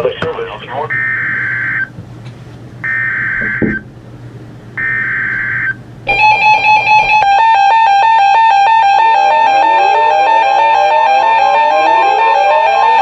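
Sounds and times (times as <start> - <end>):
electronic tune of stepping tones: 4.8 - 13.0.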